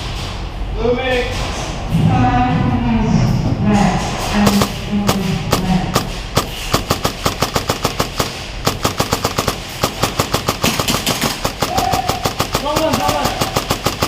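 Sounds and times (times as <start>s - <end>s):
airsoft guns firing rapidly: 4.4s - 14.0s.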